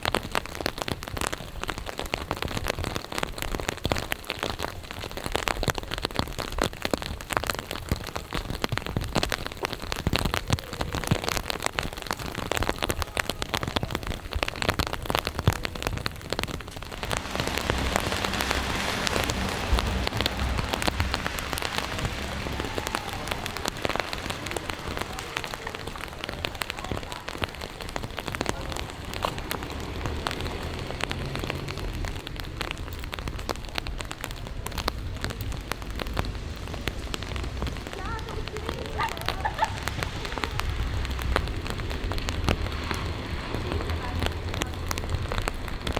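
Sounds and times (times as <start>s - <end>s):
steady rain drops: 0.0s - 45.9s
low rumble: 15.3s - 32.0s.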